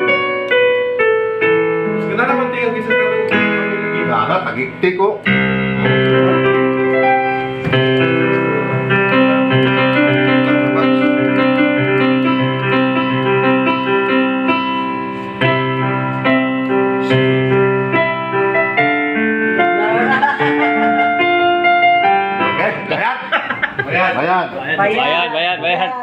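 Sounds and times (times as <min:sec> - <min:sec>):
electronic keyboard piano melody: 0:00.0 - 0:26.0.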